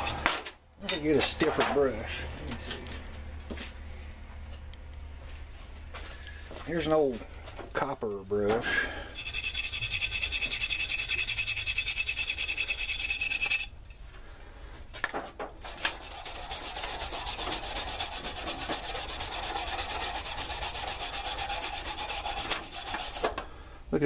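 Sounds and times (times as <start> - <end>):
wire brush scrubbing metal blade: 0.0 - 0.3, 9.1 - 13.7, 15.6 - 23.3.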